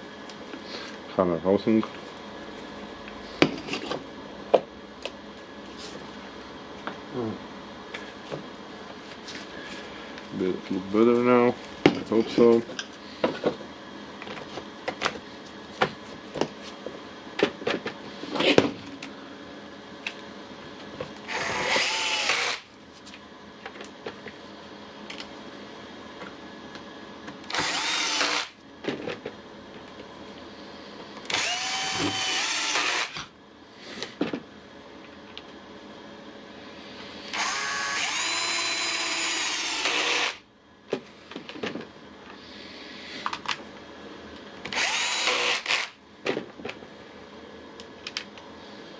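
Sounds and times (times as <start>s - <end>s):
power tool motor spinning: 21.3s - 22.7s, 27.5s - 28.6s, 31.3s - 33.2s, 37.3s - 40.4s, 44.7s - 46.0s.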